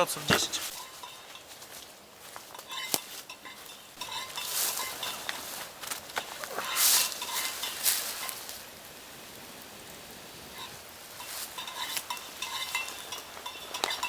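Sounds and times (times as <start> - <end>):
campfire crackling: 0.0 - 14.0.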